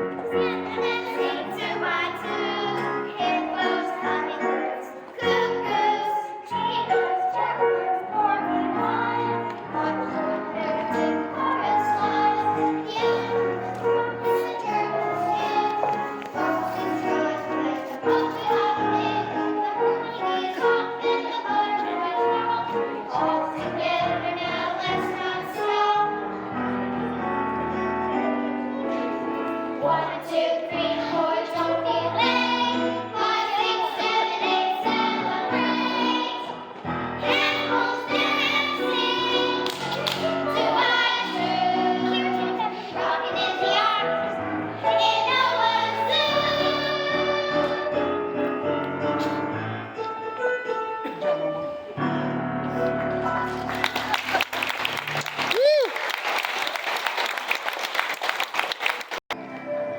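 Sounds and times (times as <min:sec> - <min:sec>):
musical accompaniment track: 0:00.0 - 0:55.6, 0:59.3 - 0:59.9
children singing: 0:00.2 - 0:27.1, 0:28.8 - 0:48.3.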